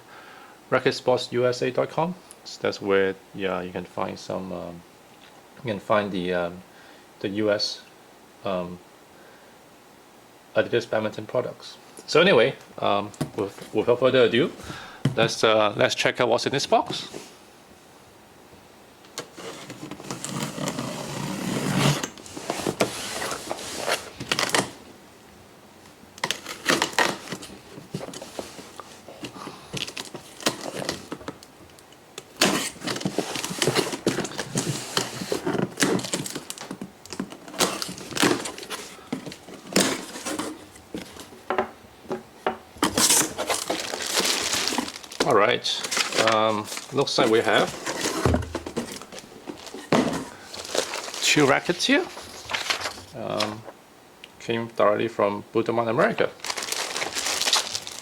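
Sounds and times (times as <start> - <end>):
cardboard scraping and tearing: 19.3 - 24.8, 32.4 - 36.6, 37.2 - 41.2, 42.8 - 53.1, 56.4 - 58.0.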